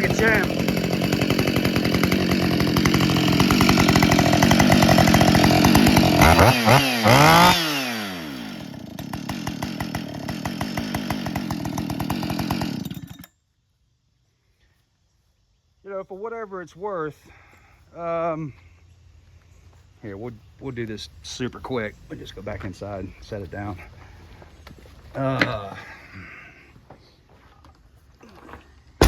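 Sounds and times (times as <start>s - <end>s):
chainsaw revving and idling: 0.0s - 13.3s.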